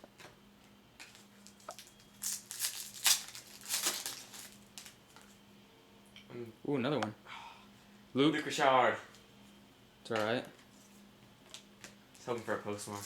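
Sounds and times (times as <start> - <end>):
wrapper torn and crumpled: 1.8 - 5.0.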